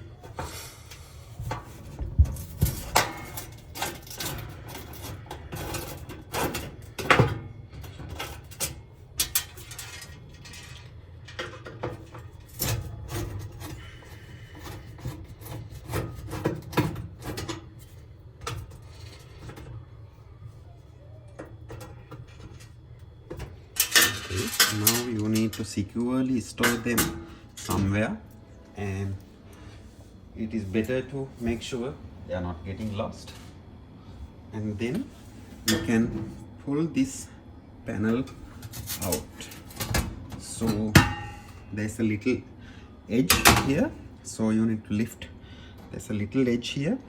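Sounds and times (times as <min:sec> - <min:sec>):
metal parts clicking and knocking: 0:23.3 - 0:25.7.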